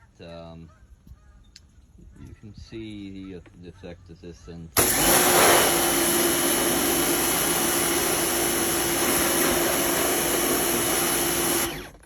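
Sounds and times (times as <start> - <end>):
pressure washer motor humming: 4.8 - 12.0
water jet hissing: 4.8 - 12.0.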